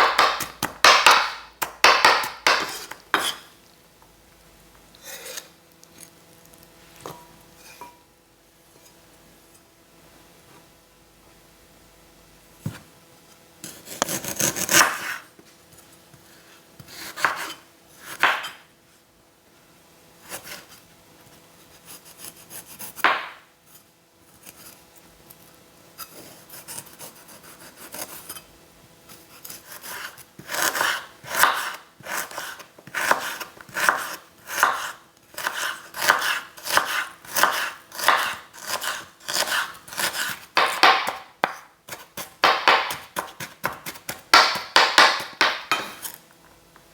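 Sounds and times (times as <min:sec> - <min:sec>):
knife cutting on a cutting board: 0:00.0 - 0:03.5, 0:13.6 - 0:15.2, 0:16.8 - 0:18.6, 0:29.1 - 0:46.2.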